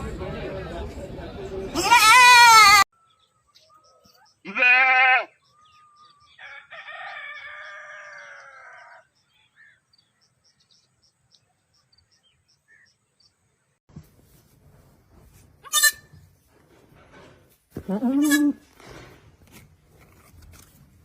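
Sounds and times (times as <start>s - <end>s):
goat bleating: 1.8s - 2.8s, 4.4s - 5.4s, 15.6s - 16.2s, 17.9s - 18.6s
rooster crowing: 6.3s - 9.0s.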